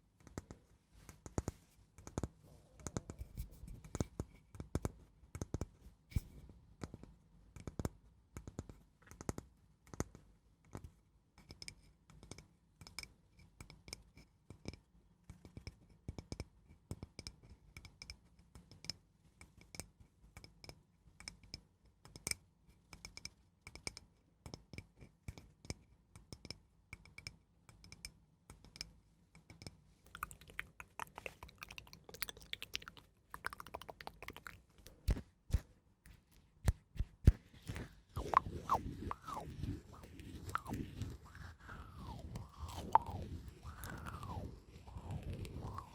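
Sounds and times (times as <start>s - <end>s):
close-miked scratching and tapping: 30.1s - 45.9s.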